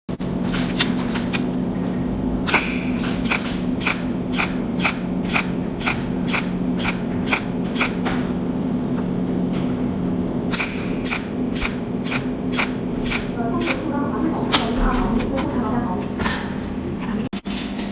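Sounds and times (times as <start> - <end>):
steady electrical hum: 0.2 - 17.6
welding machine snapping ticks: 2.5 - 8.1, 10.5 - 13.9.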